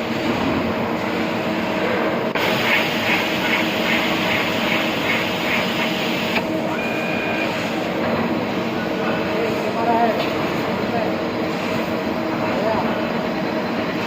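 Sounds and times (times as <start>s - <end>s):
cnc machine humming: 2.3s - 14.0s
pulsing hiss: 2.4s - 6.4s.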